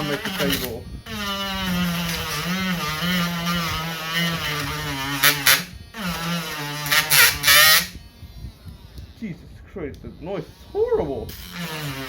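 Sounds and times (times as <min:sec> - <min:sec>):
sandpaper grinding plastic: 0:00.0 - 0:08.0, 0:11.4 - 0:12.0
rotary tool motor whine: 0:00.0 - 0:12.0.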